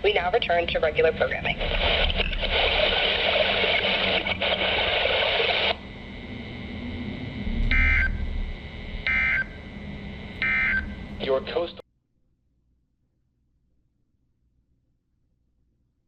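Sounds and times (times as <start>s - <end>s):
radio static hiss: 0.0s - 11.8s
warbling digital data bursts: 7.4s - 11.7s.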